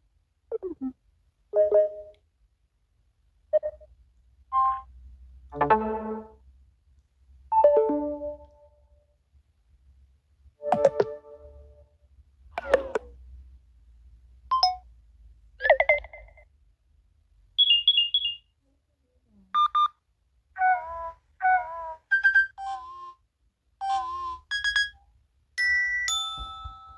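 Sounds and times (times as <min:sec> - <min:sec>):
phone alert beeps: 0:03.6 - 0:03.9, 0:10.7 - 0:11.2, 0:17.6 - 0:18.4.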